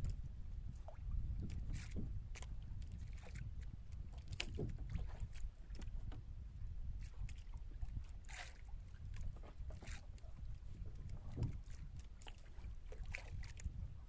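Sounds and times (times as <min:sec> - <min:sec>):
wind and water rumble: 0:00.0 - 0:14.0
light knocks and rustles: 0:04.2 - 0:06.2.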